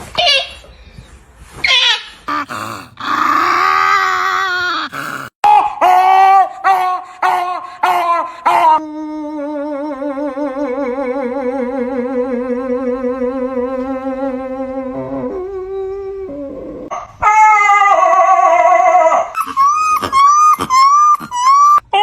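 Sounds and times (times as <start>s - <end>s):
dog groaning and yowling: 2.3s - 5.4s, 19.4s - 21.8s.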